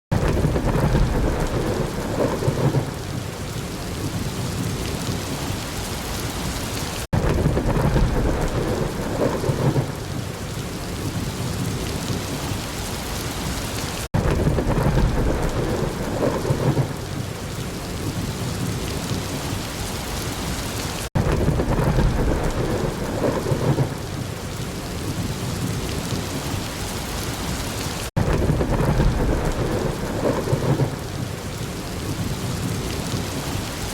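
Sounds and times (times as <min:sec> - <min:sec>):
thunder rolling: 0:00.1 - 0:03.3, 0:07.1 - 0:10.3, 0:14.1 - 0:17.2, 0:21.2 - 0:24.2, 0:28.2 - 0:31.3
heavy rain falling: 0:00.1 - 0:33.9.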